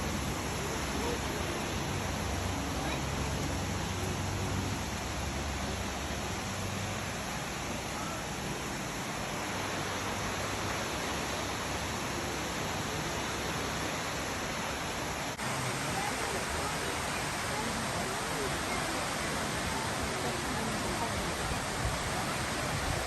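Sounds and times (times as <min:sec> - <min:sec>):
waterfall roaring: 0:00.0 - 0:23.0.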